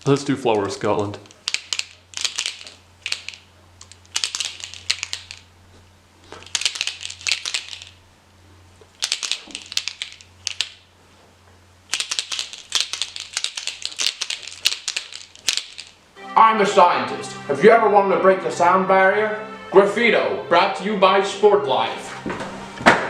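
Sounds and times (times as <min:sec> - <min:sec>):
paint marker ball rattling: 0:01.2 - 0:05.5, 0:06.4 - 0:08.0, 0:09.0 - 0:10.8, 0:11.9 - 0:16.0.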